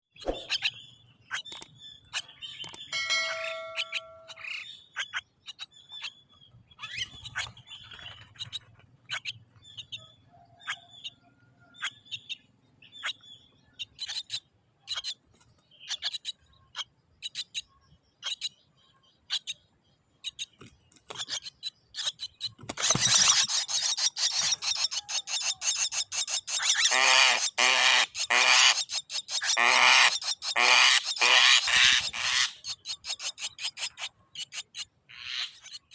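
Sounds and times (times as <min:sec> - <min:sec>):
bird chirps and clicks: 0:00.2 - 0:11.1, 0:20.2 - 0:26.9, 0:32.0 - 0:35.9
harsh rasping bird chatter: 0:00.2 - 0:11.1, 0:13.8 - 0:18.6, 0:20.2 - 0:35.9.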